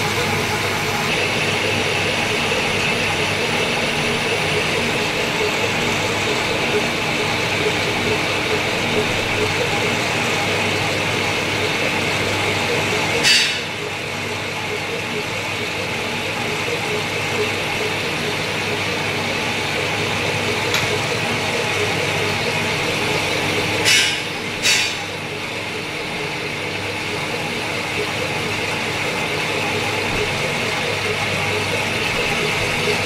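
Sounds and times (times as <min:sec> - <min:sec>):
lathe humming: 0:00.0 - 0:33.0.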